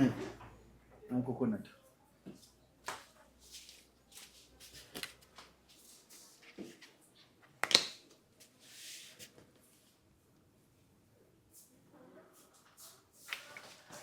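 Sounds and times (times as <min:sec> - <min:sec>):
soft rustles of hands in hair: 0:02.3 - 0:07.2.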